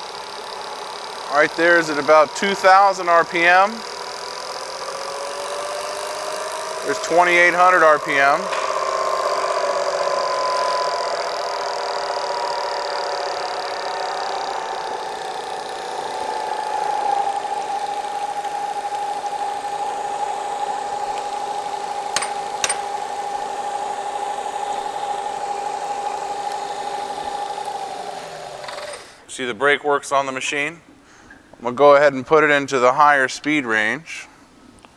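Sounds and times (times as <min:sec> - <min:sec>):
milling machine spindle whine: 0:00.0 - 0:29.2
sharp clicks: 0:21.1 - 0:23.0.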